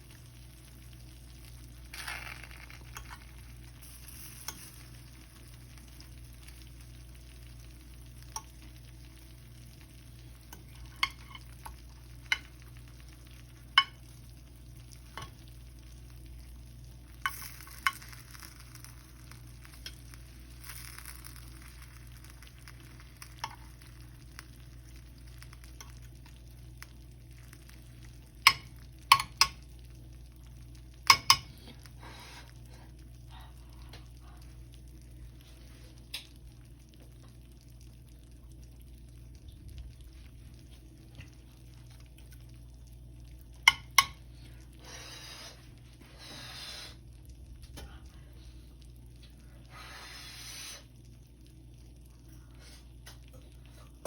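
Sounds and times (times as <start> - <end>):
steady low hum: 0.0 - 54.0.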